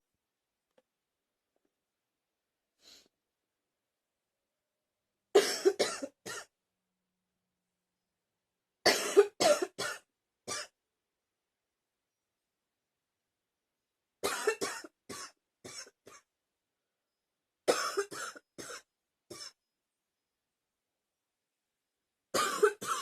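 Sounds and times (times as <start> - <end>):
person coughing: 5.4 - 6.5, 8.9 - 10.7, 14.2 - 16.2, 17.7 - 19.6, 22.4 - 23.0.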